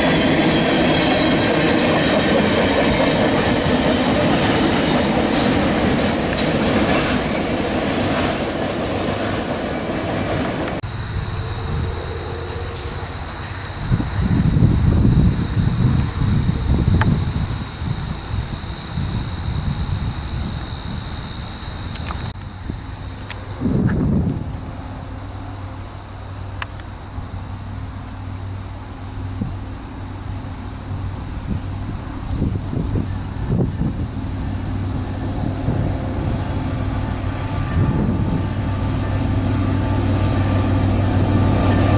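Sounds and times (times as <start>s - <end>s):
wheels clacking over rail joints: 0.0s - 10.8s
freight train rumbling: 0.0s - 41.9s
insects chirping: 0.0s - 41.9s
steady low rumble: 10.7s - 26.3s.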